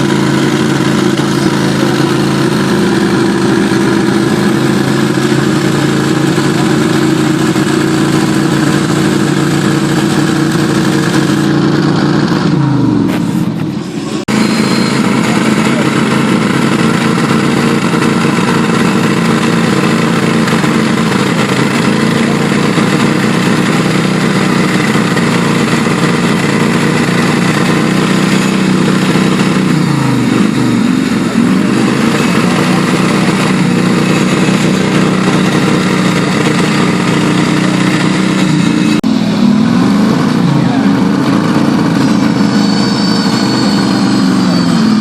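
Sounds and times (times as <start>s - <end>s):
off-road vehicle engine running: 0.0s - 45.0s.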